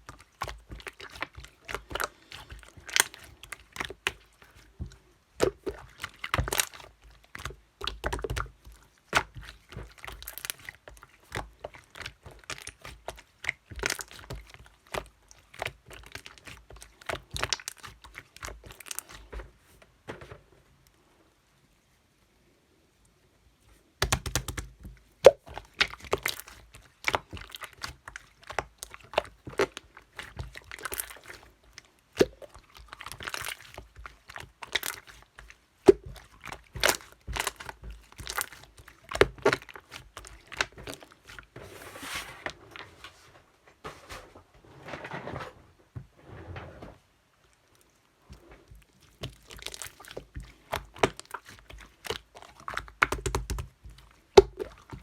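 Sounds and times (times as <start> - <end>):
crunchy rustling: 36.7 - 52.4.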